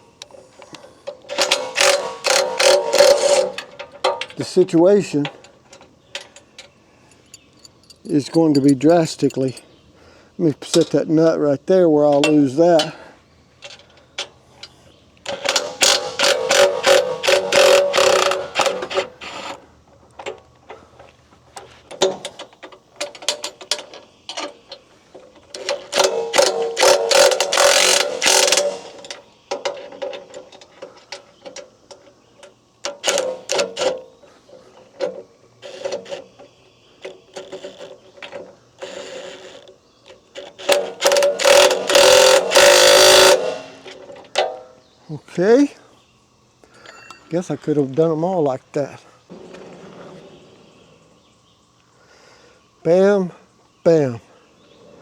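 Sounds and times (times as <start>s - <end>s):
ratchet wrench clicking: 1.3s - 4.6s, 15.3s - 19.4s, 25.6s - 29.2s, 40.5s - 43.8s.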